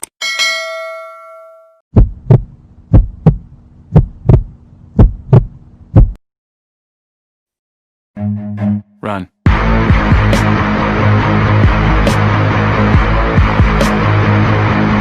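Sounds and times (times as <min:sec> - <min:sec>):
single ding: 0:00.2 - 0:01.8
heartbeat thumps: 0:01.9 - 0:06.2
low steady hum: 0:02.0 - 0:06.2.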